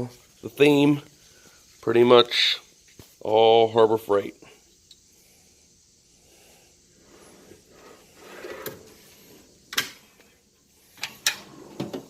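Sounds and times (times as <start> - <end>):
metal drawer sliding on runners: 7.7 - 9.1.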